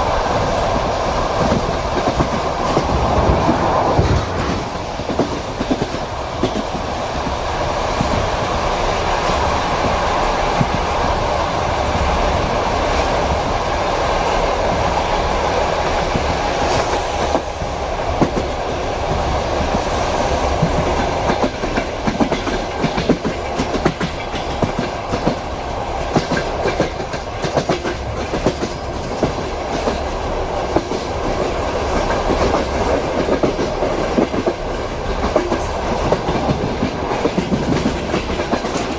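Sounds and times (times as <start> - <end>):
train wheels clattering over joints: 20.6 - 38.9.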